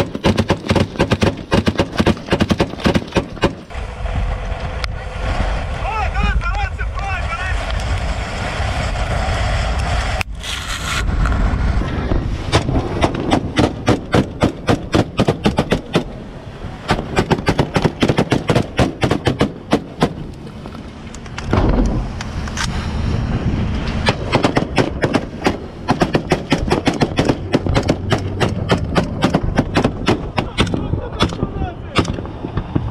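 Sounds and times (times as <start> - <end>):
rapid gunfire: 0.0 - 3.7, 12.6 - 16.1, 16.9 - 20.2, 24.1 - 32.3
boat engine rumble: 0.0 - 32.9.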